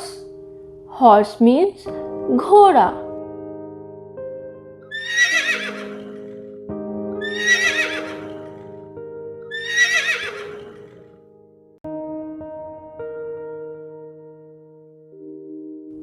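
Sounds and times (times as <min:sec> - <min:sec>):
soft keyboard music: 0:00.0 - 0:16.0
horse whinnying: 0:04.9 - 0:06.5, 0:07.2 - 0:08.8, 0:09.5 - 0:11.2.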